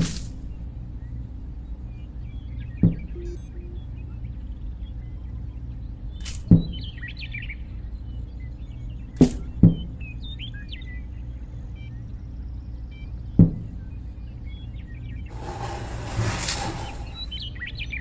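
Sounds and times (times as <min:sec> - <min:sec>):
birds chirping: 0:00.0 - 0:18.0
steady low hum: 0:00.0 - 0:18.0
sharp knocks: 0:02.8 - 0:03.3.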